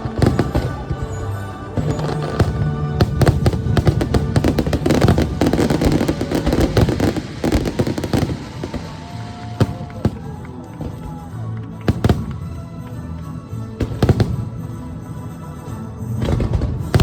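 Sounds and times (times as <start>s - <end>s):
fireworks bursting and crackling: 0.0s - 14.7s, 16.2s - 17.0s
music from speakers: 0.0s - 17.0s.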